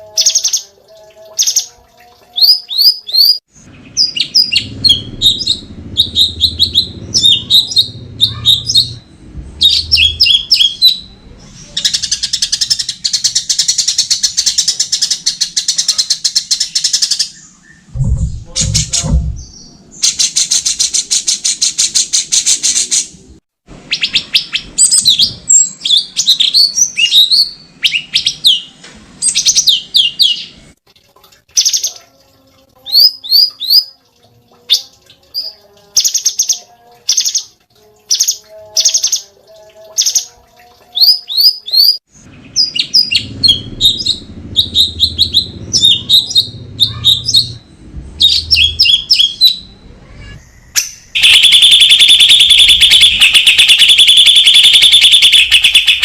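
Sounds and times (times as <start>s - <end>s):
songbird singing: 0.0s - 22.9s, 41.0s - 56.0s.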